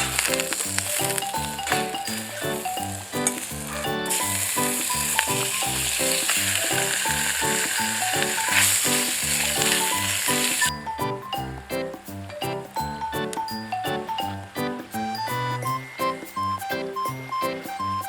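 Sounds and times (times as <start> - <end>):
food sizzling in a pan: 3.4 - 10.7.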